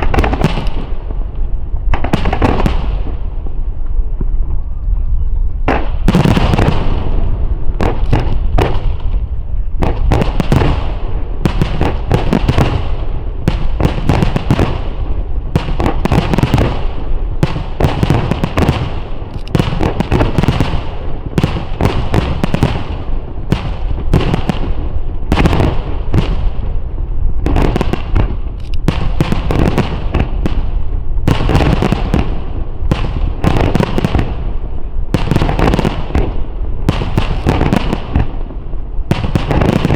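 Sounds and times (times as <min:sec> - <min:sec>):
fireworks booming and cracking: 0:00.0 - 0:39.9.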